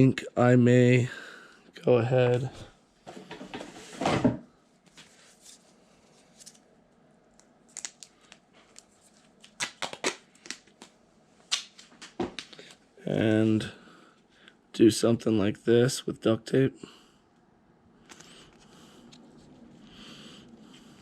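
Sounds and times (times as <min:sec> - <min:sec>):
plastic clicks and crinkles: 0:07.3 - 0:11.0.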